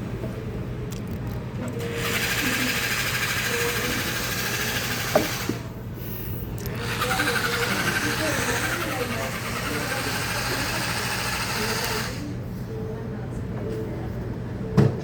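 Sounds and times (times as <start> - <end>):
small motorised tool buzzing: 1.9 - 5.6, 6.7 - 12.3.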